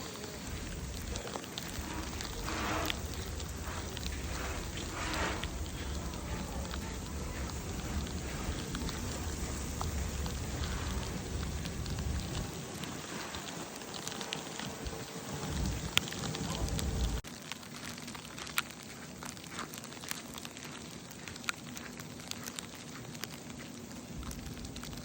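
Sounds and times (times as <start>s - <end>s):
snow falling hiss with ticks: 0.0s - 25.0s
low rumble: 0.3s - 14.2s, 14.8s - 17.2s.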